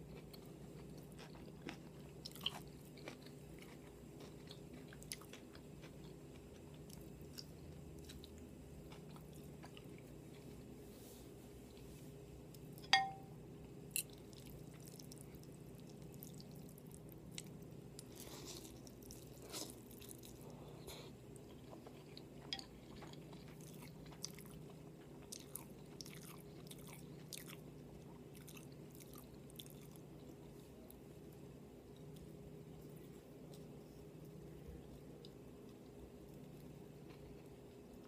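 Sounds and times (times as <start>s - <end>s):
soft chewing: 0.0s - 38.0s
steady low hum: 0.0s - 38.0s
sharp clink: 12.8s - 13.4s.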